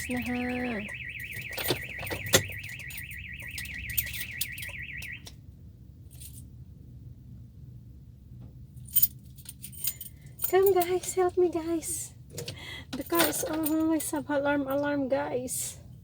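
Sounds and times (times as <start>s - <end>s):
car alarm siren warbling: 0.0s - 5.3s.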